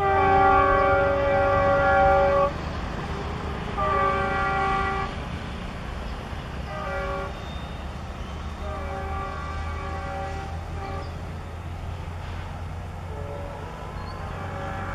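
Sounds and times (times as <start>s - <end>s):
locomotive horn blasts: 0.0s - 2.6s, 3.8s - 5.2s, 6.6s - 7.9s, 8.5s - 11.4s, 13.0s - 14.9s.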